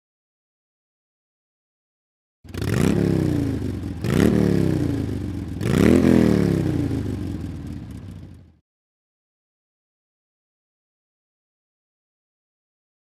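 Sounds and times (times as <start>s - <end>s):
engine revving: 2.5s - 8.6s.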